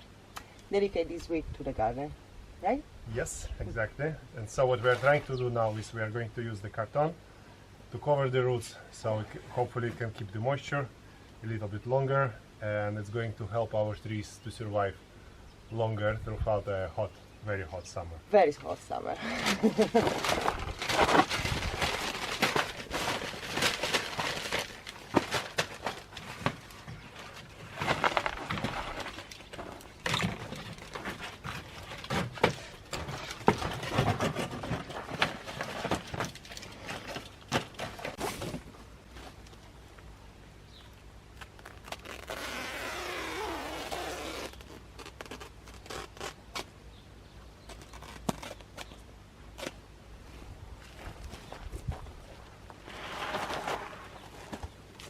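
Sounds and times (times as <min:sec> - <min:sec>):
cardboard crackling and rustling: 0:19.4 - 0:39.7, 0:47.6 - 0:49.8, 0:50.8 - 0:55.0.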